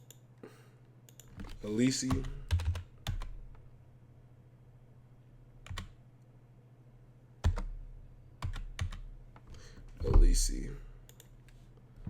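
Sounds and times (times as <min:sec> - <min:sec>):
keyboard key presses: 0:01.1 - 0:03.4, 0:05.6 - 0:06.0.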